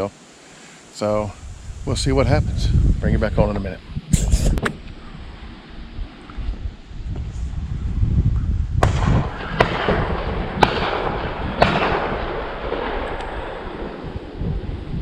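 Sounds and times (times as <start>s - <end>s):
wind rumble on microphone: 1.1s - 15.0s
sharp knocks with hiss: 4.1s - 5.0s.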